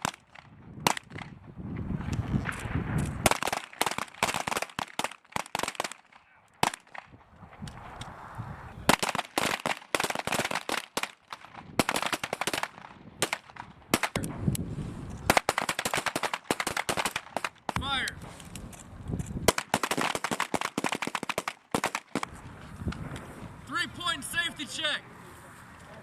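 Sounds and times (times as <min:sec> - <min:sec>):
pistols firing: 0:02.5 - 0:07.2, 0:08.9 - 0:14.3, 0:15.2 - 0:17.8, 0:19.4 - 0:22.3.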